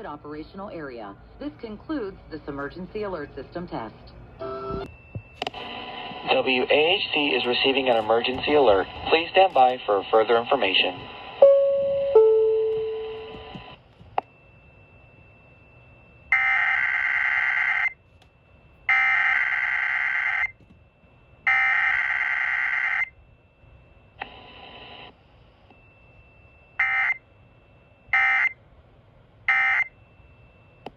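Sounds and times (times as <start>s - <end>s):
faint steady high tone: 4.4s - 16.5s, 25.2s - 30.9s.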